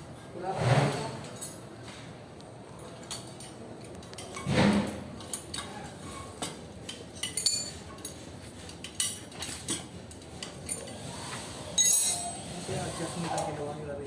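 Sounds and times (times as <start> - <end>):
metal parts clinking: 6.9 - 8.2, 11.8 - 12.4.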